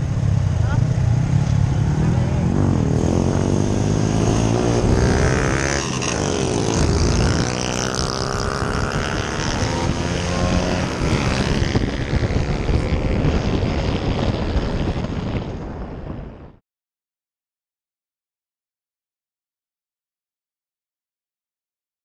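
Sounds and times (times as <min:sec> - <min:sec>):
motorcycle engine accelerating: 0:00.0 - 0:16.6
wind rushing: 0:01.0 - 0:16.6.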